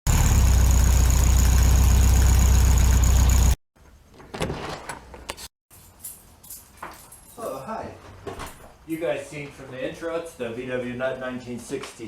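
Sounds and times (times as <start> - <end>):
loud engine running: 0.0 - 3.6.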